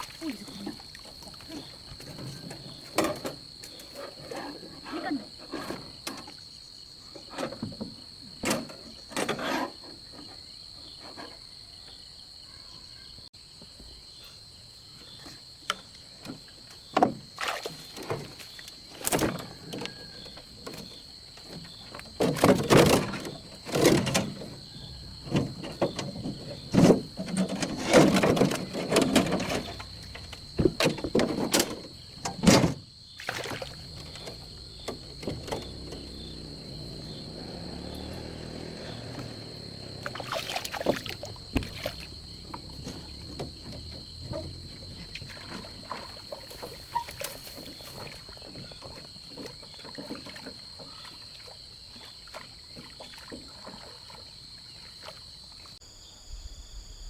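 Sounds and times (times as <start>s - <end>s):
knocks and thumps: 19.1s - 48.8s.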